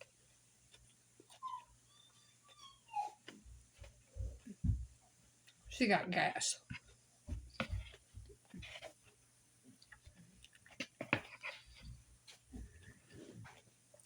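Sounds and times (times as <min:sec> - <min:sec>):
chewing raw salad: 0:07.7 - 0:14.0.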